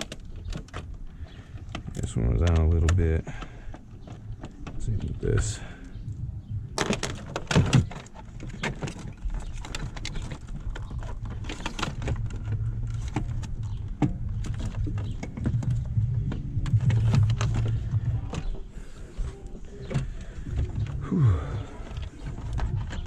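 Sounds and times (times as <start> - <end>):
plastic clicks and rattles: 0.0 - 5.5, 6.8 - 18.7
low rumble: 4.2 - 6.8, 10.4 - 22.9.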